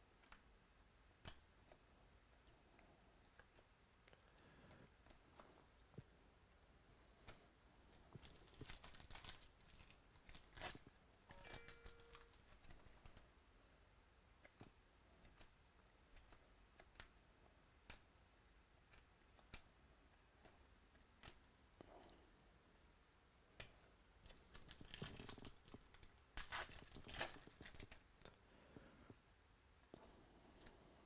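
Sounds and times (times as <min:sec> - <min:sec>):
foil pack crinkling and tearing: 0:08.2 - 0:13.0, 0:24.3 - 0:28.0.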